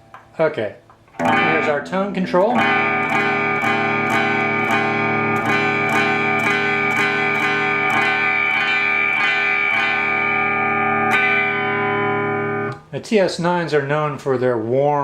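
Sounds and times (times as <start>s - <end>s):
overdriven electric guitar chord strummed: 1.1s - 12.8s.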